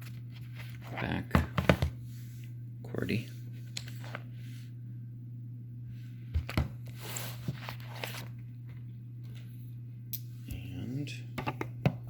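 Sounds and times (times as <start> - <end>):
steady low hum: 0.0 - 12.0
paper rustle: 6.9 - 8.4.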